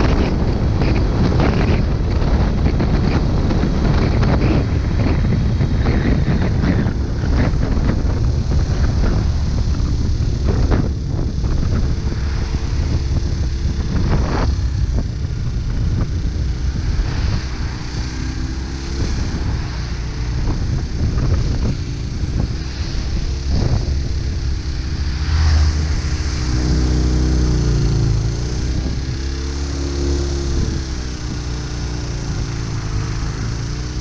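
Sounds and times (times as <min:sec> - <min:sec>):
motorcycle engine running: 0:00.0 - 0:34.0
wind buffeting microphone: 0:00.0 - 0:34.0.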